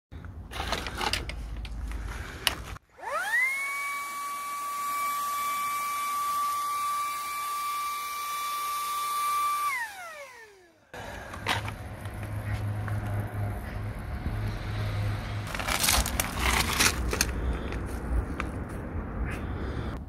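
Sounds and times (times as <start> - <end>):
small electric motor spinning: 2.9 - 11.2.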